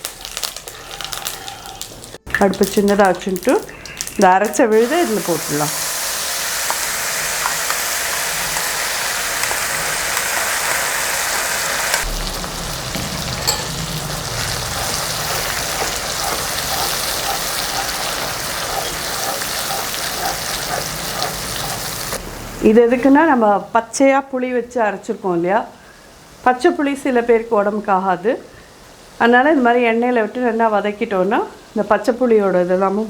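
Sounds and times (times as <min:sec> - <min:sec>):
paste sizzling in hot oil: 0:00.0 - 0:22.2.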